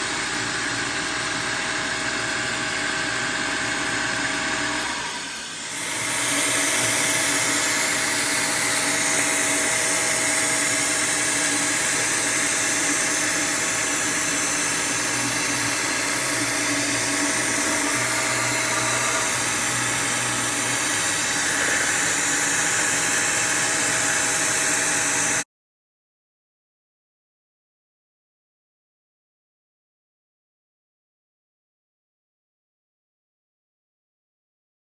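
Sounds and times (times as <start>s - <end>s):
milling machine running: 0.0s - 25.4s.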